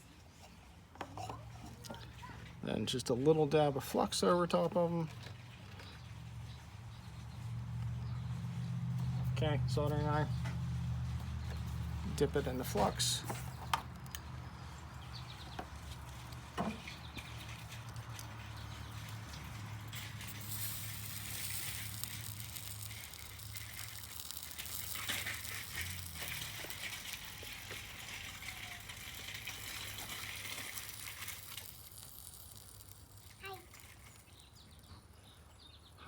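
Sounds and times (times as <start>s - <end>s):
flux sizzling hiss: 18.9s - 34.2s.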